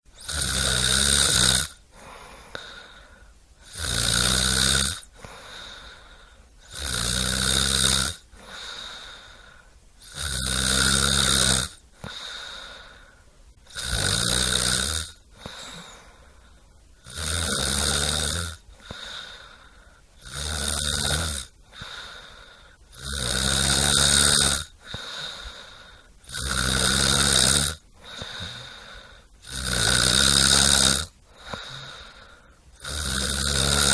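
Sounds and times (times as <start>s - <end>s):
person snoring: 0.2s - 33.9s
quiet breathing out: 1.8s - 3.8s, 5.0s - 6.8s, 8.2s - 10.2s, 11.8s - 13.8s, 15.1s - 17.1s, 18.1s - 20.3s, 21.4s - 23.0s, 24.6s - 26.7s, 27.5s - 29.6s, 30.4s - 33.2s.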